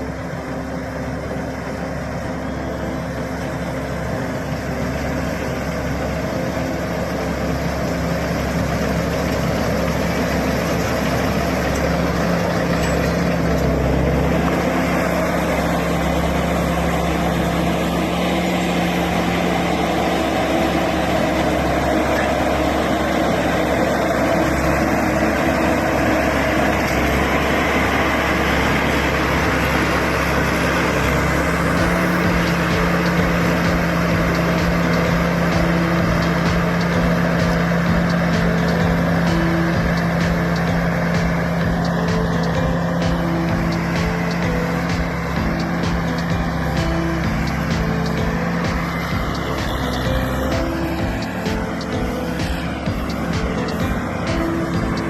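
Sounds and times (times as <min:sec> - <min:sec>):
combine harvester engine droning: 0:00.0 - 0:55.0.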